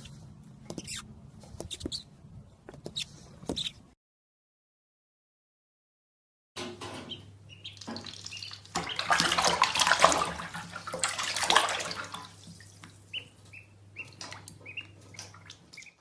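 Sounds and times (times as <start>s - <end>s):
water running and splashing: 7.8s - 12.9s.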